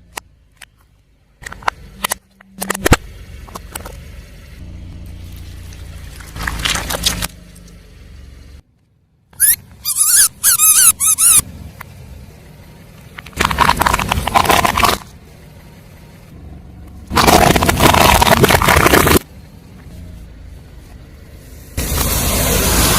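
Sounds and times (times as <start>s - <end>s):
low vehicle rumble: 0.0s - 22.9s
high wavering squeaks: 9.4s - 11.4s
tyres crushing objects: 13.2s - 15.1s, 17.1s - 19.2s.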